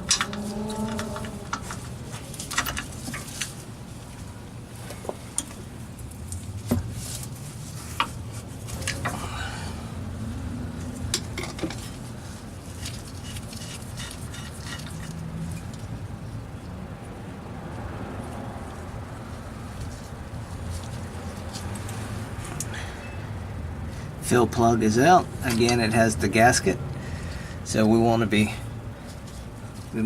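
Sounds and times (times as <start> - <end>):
metal tools clinking and knocking: 0.0 - 3.4
metal scraping: 0.0 - 3.6.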